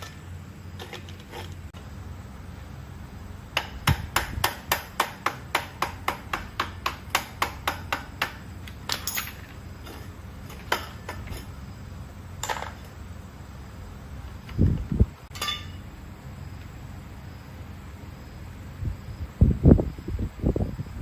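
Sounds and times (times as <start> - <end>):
rapid hammer strikes: 3.5 - 9.0.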